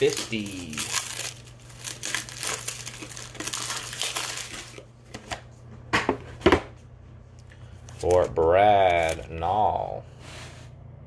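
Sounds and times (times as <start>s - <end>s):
card packaging crinkling: 0.0s - 5.5s, 7.8s - 9.4s.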